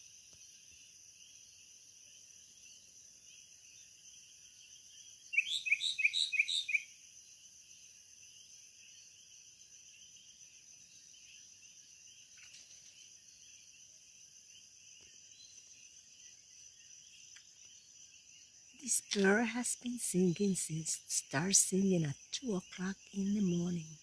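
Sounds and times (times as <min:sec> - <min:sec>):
night insects chorus: 0:00.0 - 0:24.0
bird singing: 0:05.3 - 0:06.9, 0:15.0 - 0:24.0.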